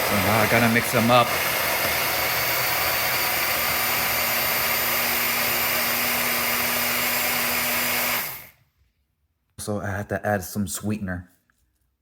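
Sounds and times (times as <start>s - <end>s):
electric blender running: 0.0s - 8.6s.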